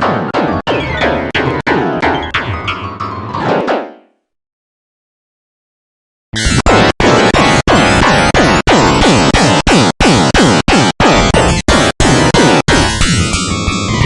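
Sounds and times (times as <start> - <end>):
dense synthesized midi music: 6.4 - 14.0.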